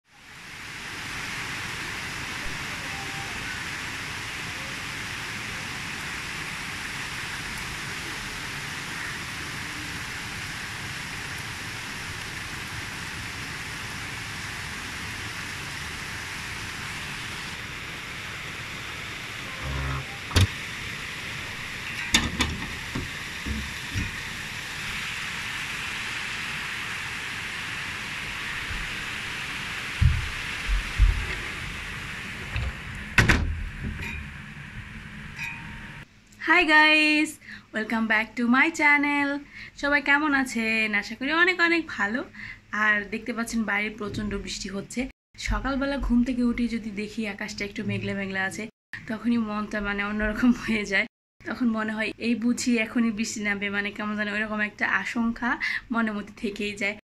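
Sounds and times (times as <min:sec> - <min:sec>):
heavy rain falling: 0:00.2 - 0:36.0
sharp knocks and thumps: 0:19.7 - 0:20.5, 0:22.0 - 0:24.3, 0:30.0 - 0:31.5.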